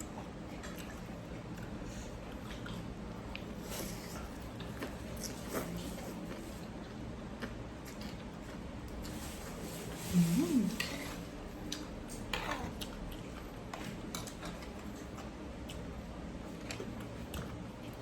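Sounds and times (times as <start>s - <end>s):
mouth sounds: 10.1s - 10.8s.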